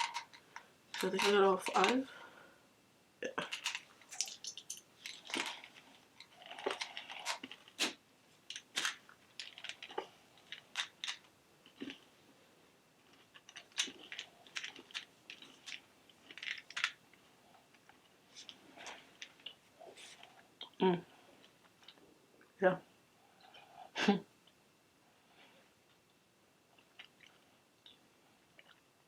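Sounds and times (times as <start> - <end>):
candy chewing crunch: 3.4 - 12.1, 13.1 - 17.0.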